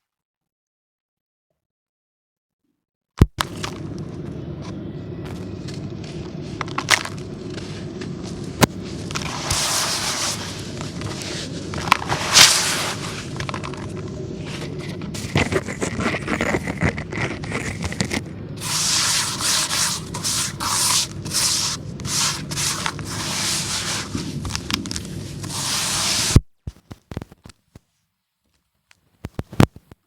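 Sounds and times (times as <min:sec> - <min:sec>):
crumbly material crunching: 0:05.3 - 0:27.4.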